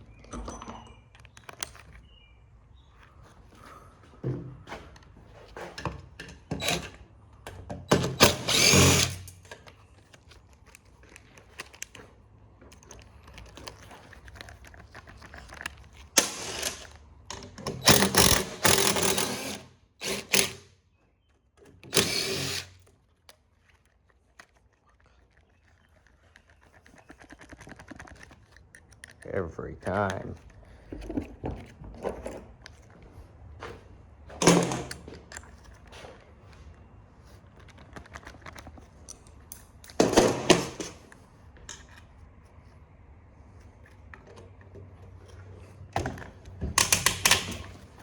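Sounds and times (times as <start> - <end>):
tools and parts clicking: 0.1 - 2.3, 4.7 - 20.7, 21.5 - 33.0, 37.2 - 42.2, 43.8 - 48.0
power drill-driver whirring: 8.0 - 9.3, 16.2 - 17.0, 17.8 - 20.6, 21.8 - 22.9.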